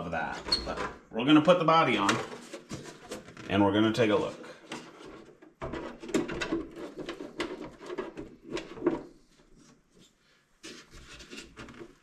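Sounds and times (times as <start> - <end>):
plastic shell knocks and clatter: 4.7 - 9.1.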